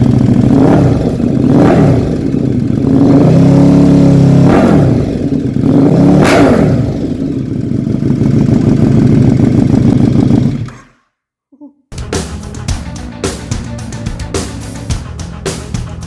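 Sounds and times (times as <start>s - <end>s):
motorcycle engine revving: 0.0s - 10.7s, 11.9s - 16.0s
heavy rock music: 11.9s - 16.0s.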